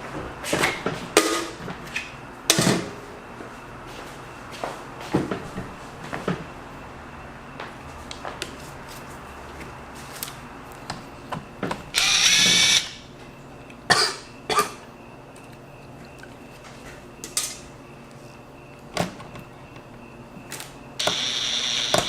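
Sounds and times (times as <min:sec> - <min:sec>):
power drill whining: 0:11.9 - 0:13.0, 0:21.0 - 0:22.0.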